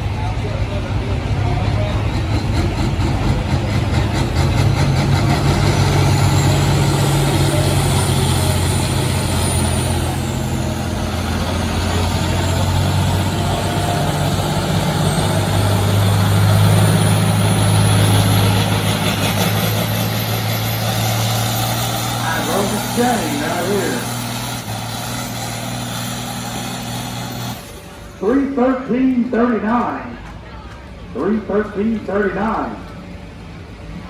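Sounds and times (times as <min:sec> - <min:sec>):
tractor engine running: 0:00.0 - 0:34.0.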